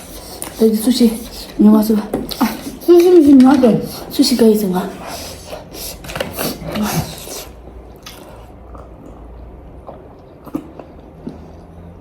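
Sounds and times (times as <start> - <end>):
person chewing food: 5.3 - 12.0.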